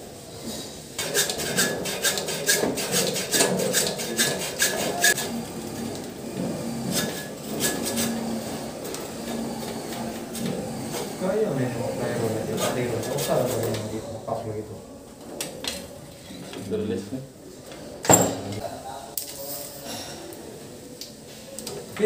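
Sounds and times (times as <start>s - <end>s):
hand tool scraping: 0.4s - 11.2s.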